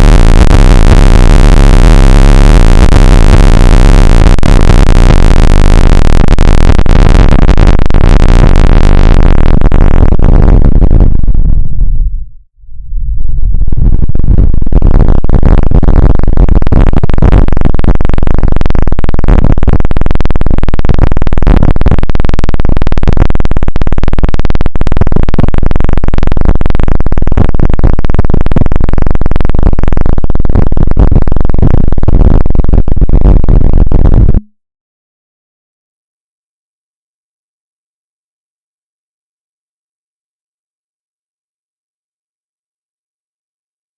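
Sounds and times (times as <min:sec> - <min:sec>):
harsh electronic crackling noise: 0:00.0 - 0:34.5.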